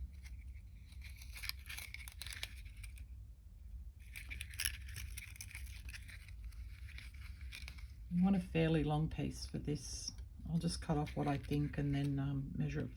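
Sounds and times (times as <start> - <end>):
wire rustling and clicking: 0.0 - 3.1, 4.0 - 8.1
low steady hum: 0.0 - 12.9.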